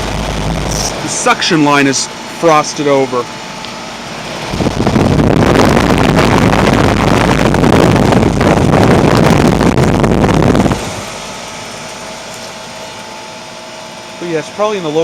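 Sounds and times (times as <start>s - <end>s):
heat pump running: 0.0s - 15.0s
wind buffeting microphone: 4.2s - 11.5s.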